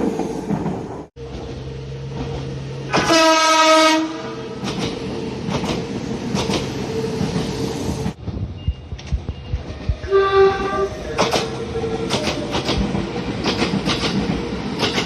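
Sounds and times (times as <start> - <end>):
train wheels clacking over rail joints: 2.2 - 3.4, 4.6 - 7.5, 11.1 - 15.0
train horn blast: 2.9 - 4.5, 10.0 - 11.0.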